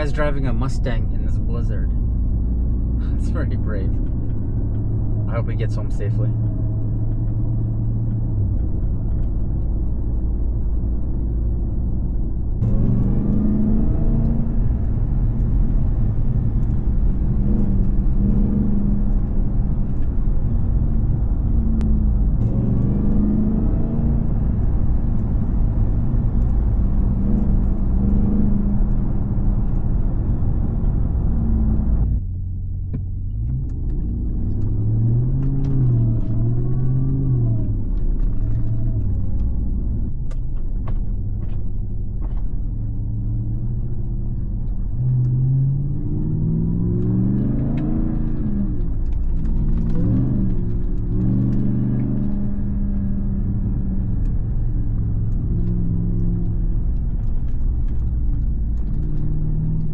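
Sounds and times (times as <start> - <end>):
road rumble: 0.0 - 59.9
truck engine droning: 0.0 - 59.9.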